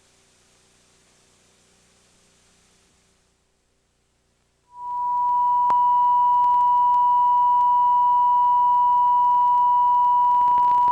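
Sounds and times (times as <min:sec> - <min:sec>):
steady pure test tone: 0:04.7 - 0:10.9.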